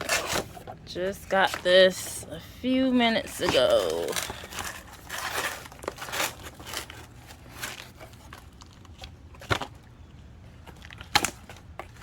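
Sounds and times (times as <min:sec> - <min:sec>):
cardboard box rustling: 0:00.0 - 0:02.0, 0:03.0 - 0:09.9.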